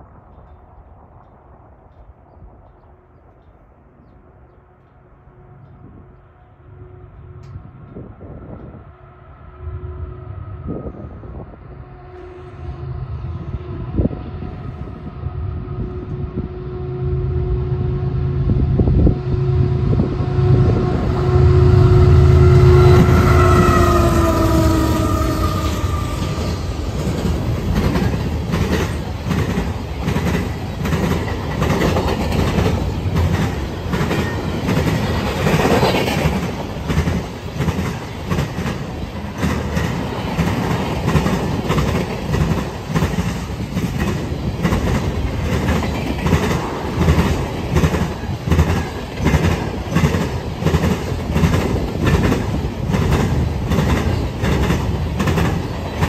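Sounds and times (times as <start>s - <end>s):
low train rumble: 0.0s - 56.0s
locomotive horn: 5.2s - 26.9s.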